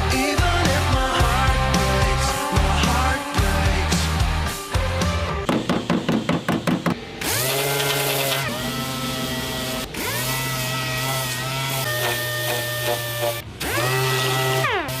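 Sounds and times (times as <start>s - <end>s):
electric power tool motor: 7.0s - 15.0s.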